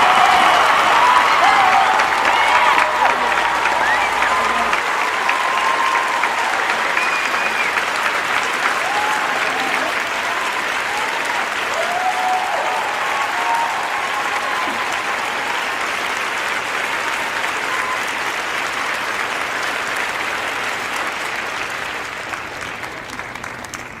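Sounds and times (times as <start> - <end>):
people shouting: 0.0 - 6.9
crowd clapping and cheering: 0.0 - 24.0.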